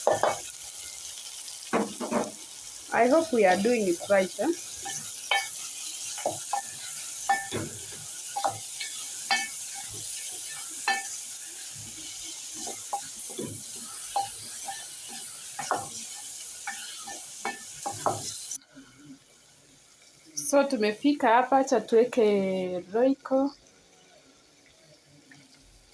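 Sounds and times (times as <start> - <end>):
spoon scraping and knocking pot: 0.0 - 0.5, 1.7 - 2.4, 4.8 - 11.2, 11.8 - 18.4
vegetables sizzling in a pot: 0.0 - 25.9.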